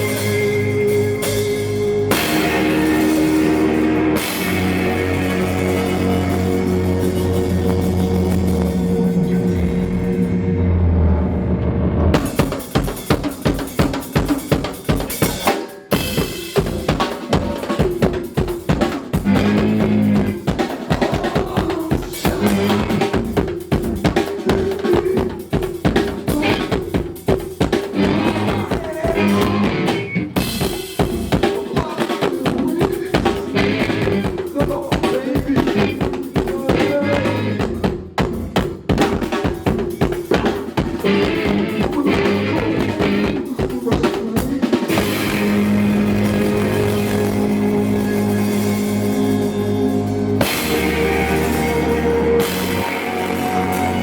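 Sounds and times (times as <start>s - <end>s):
fast drumming on drum kit: 0.0s - 10.2s, 12.2s - 54.0s
band playing music: 0.0s - 10.8s, 12.1s - 54.0s
sustained pitched part: 0.0s - 12.9s, 19.2s - 23.2s, 44.8s - 54.0s.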